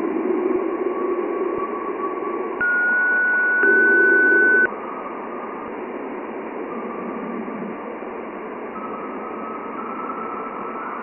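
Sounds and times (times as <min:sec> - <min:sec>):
steady static hiss: 0:00.0 - 0:11.0
faint held tone: 0:02.6 - 0:04.7
loud steady high tone: 0:02.6 - 0:05.7.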